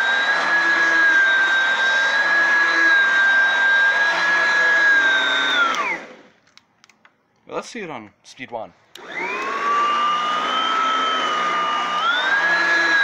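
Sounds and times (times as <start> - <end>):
vacuum cleaner motor whining: 0.0 - 6.3, 9.0 - 13.0.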